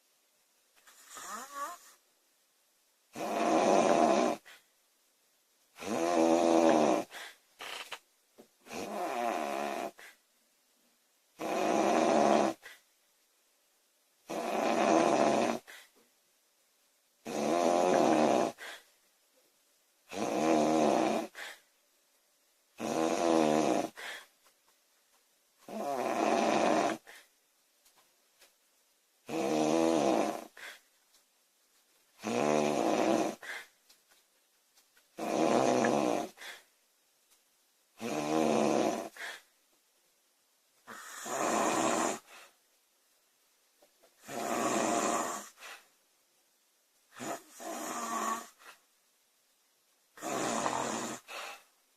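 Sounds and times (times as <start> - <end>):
woman snoring loudly: 1.1 - 2.0, 3.1 - 4.4, 5.8 - 7.2, 8.7 - 10.0, 11.4 - 12.6, 14.3 - 15.7, 17.2 - 18.6, 20.1 - 21.4, 22.8 - 24.0, 25.7 - 27.1, 29.3 - 30.6, 32.2 - 33.5, 35.2 - 36.4, 38.0 - 39.2, 40.9 - 42.3, 44.2 - 45.6, 47.2 - 48.6, 50.2 - 51.4.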